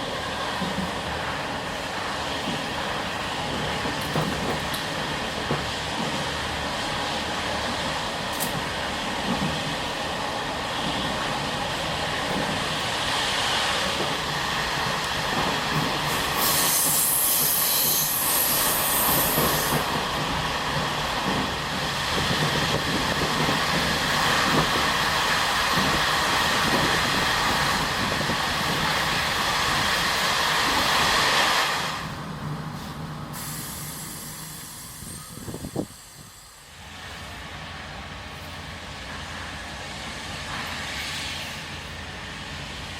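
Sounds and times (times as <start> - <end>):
train coaches rumbling on rails: 0.0 - 42.9.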